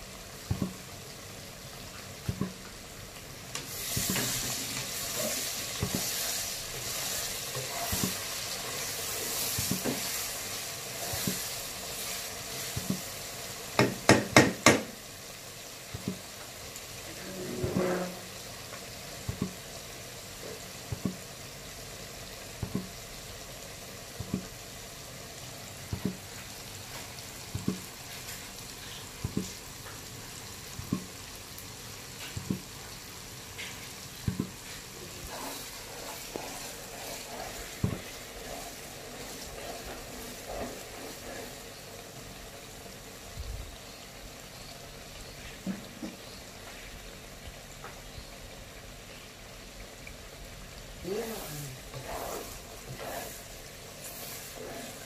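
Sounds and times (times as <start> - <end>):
frying in hot oil sizzling: 0.0 - 55.0
knocking in pan: 0.4 - 0.9, 2.2 - 2.8, 3.6 - 6.2, 6.8 - 8.2, 9.5 - 10.2, 12.8 - 13.1, 13.8 - 15.0, 15.9 - 16.4, 17.5 - 19.7, 20.4 - 21.2, 22.6 - 23.0, 24.2 - 24.6, 25.9 - 26.4, 27.5 - 27.9, 29.2 - 29.6, 30.8 - 31.2, 32.2 - 32.7, 33.6 - 34.7, 37.8 - 38.6.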